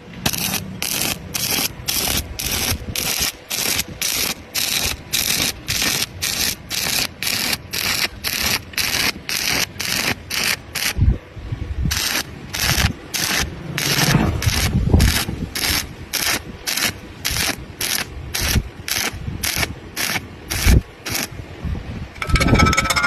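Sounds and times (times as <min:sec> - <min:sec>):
abrasive tool scraping by hand: 0:12.0 - 0:21.3.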